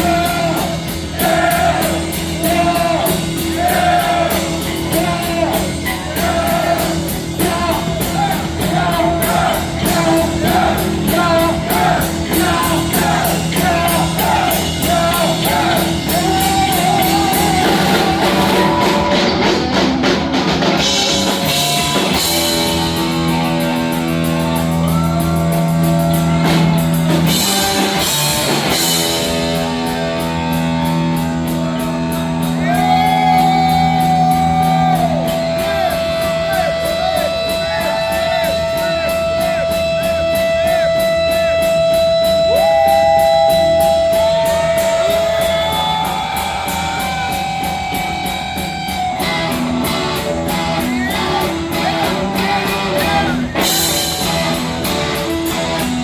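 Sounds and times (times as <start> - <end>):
person singing: 0.0 - 19.9, 50.5 - 55.6
heavy metal band playing: 0.0 - 56.0.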